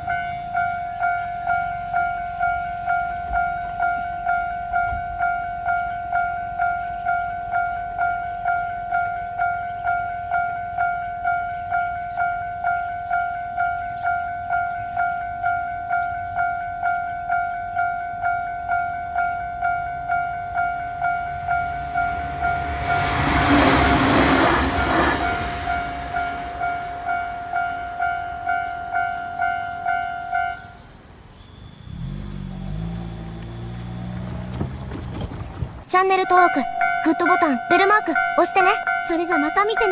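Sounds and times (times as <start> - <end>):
electric train rushing past: 0.0 - 6.7, 18.0 - 39.9
railroad crossing bell clanging: 0.0 - 39.9
low hum: 18.9 - 30.4.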